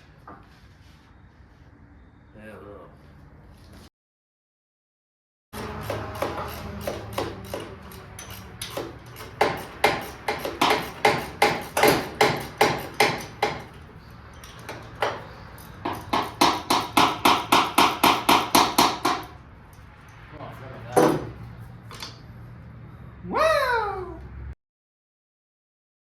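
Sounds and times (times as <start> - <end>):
hand tool striking metal bolt: 5.6 - 13.8, 14.4 - 19.4.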